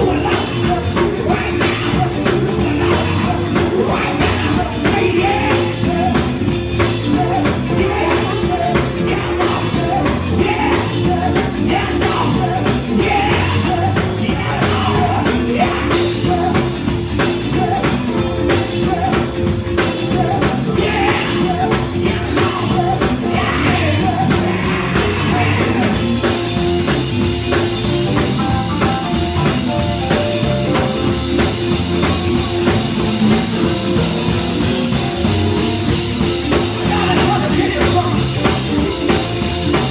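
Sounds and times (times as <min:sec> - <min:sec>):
person singing: 0:00.0 - 0:27.0, 0:35.9 - 0:39.9
driving drum beat: 0:00.0 - 0:39.9
rock music: 0:00.0 - 0:39.9.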